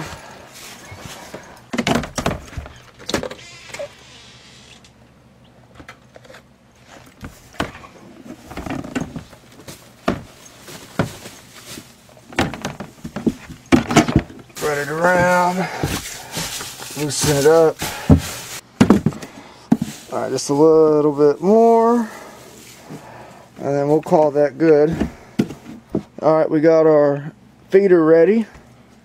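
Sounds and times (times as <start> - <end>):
shredded paper rustling: 8.4 - 13.4, 14.5 - 18.6, 19.7 - 22.9.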